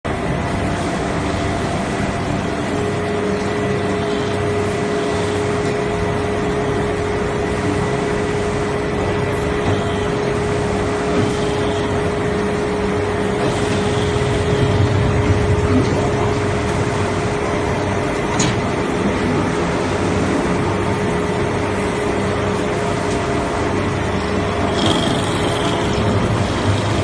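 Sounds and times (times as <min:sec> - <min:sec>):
industrial machinery rushing din: 0:00.1 - 0:27.0
machinery whining tones: 0:00.3 - 0:27.0
low rumble: 0:14.2 - 0:18.2.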